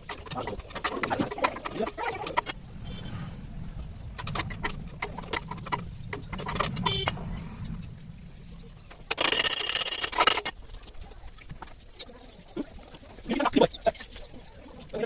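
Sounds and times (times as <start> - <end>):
metal tools clicking and knocking: 0.0 - 2.6, 8.9 - 10.6.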